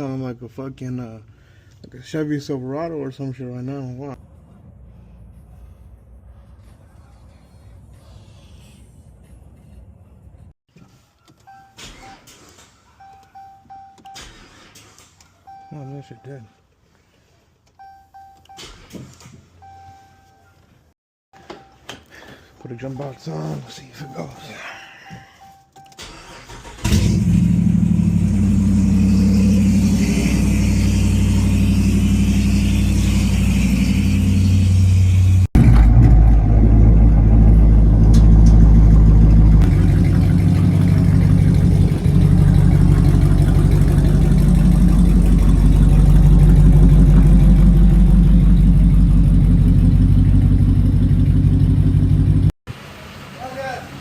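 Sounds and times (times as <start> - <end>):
loud car engine running: 26.8 - 52.5.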